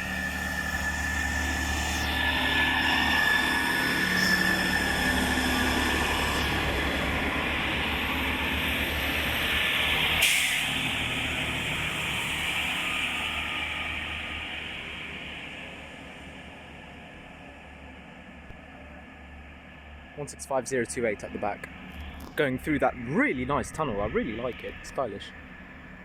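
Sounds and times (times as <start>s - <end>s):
high wheel whine: 0.0s - 20.2s
train engines droning: 0.0s - 26.0s.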